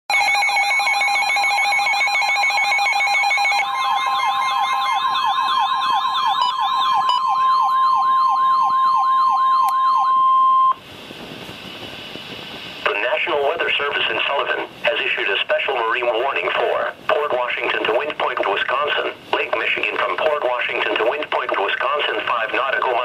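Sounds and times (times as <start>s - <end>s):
hi-lo two-tone siren: 0.1s - 10.8s
siren yelp and wail: 0.1s - 10.8s
steady alarm tone: 0.1s - 10.8s.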